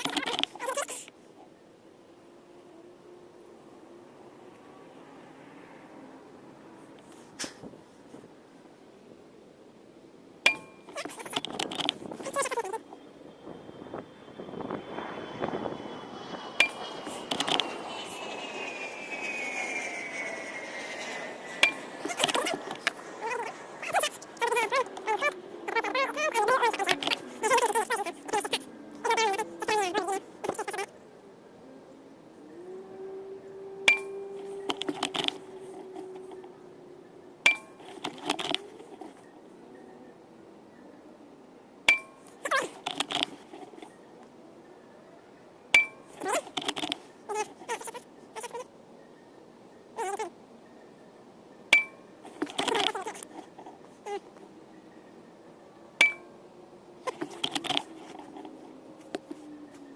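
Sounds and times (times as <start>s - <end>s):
faint falling high tone: 10.5s - 11.1s, 14.6s - 26.2s, 31.8s - 37.8s, 54.1s - 56.5s.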